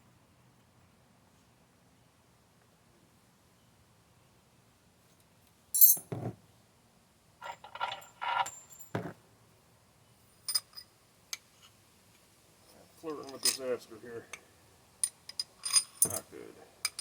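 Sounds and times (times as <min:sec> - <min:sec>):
metal parts clinking: 0:05.8 - 0:06.2, 0:07.4 - 0:09.1, 0:10.5 - 0:10.9, 0:12.7 - 0:13.8, 0:15.0 - 0:17.0
tools clattering and scraping: 0:07.4 - 0:09.2, 0:10.5 - 0:10.9, 0:12.7 - 0:13.8, 0:15.0 - 0:17.0.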